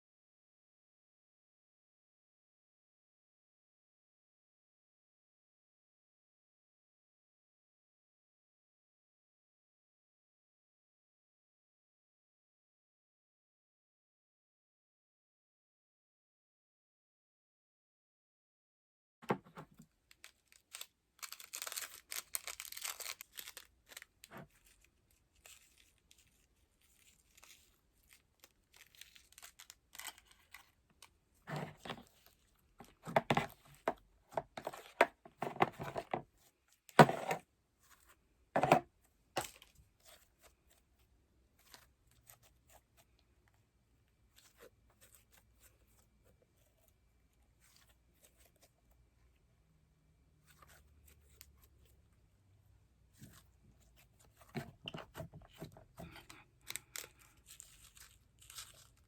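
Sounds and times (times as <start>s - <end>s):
slime crinkling and tearing: 20.2s - 30.8s, 56.6s - 59.0s.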